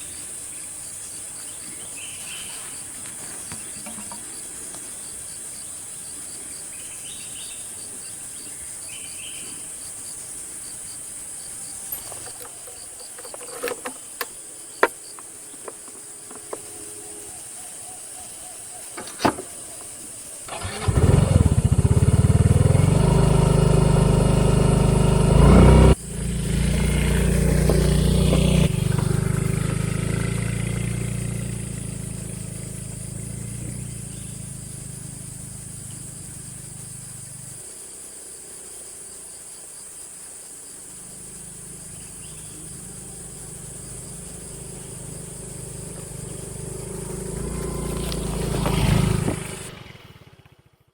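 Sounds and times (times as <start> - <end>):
motorcycle engine running: 11.9 - 16.8, 20.5 - 37.7, 40.8 - 50.9.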